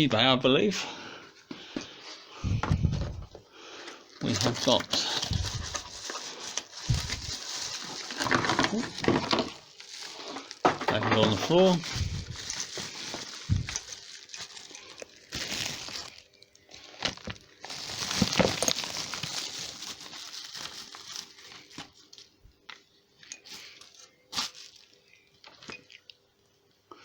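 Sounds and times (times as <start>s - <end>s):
packaging crinkling and tearing: 4.2s - 22.4s, 23.5s - 25.5s.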